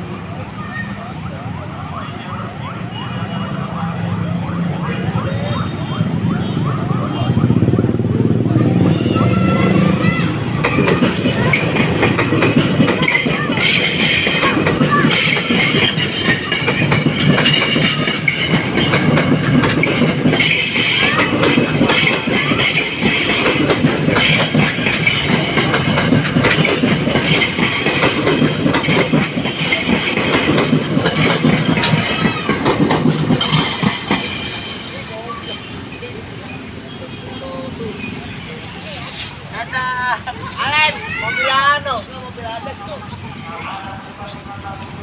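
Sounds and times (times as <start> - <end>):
train wheels clattering over rails: 7.4 - 36.9.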